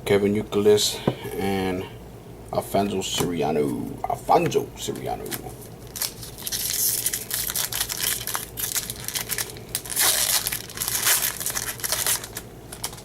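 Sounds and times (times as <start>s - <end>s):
foil wrapper tearing and crinkling: 5.2s - 13.0s.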